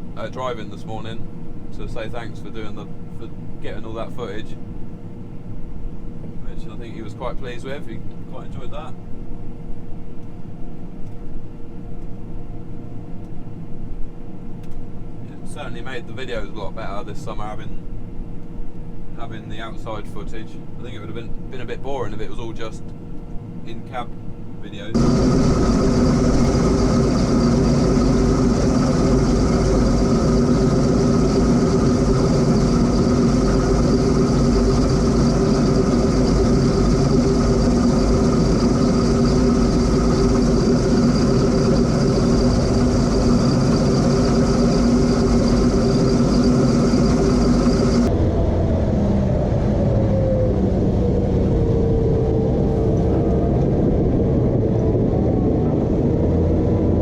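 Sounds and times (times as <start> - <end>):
combine harvester running: 24.9 - 50.0.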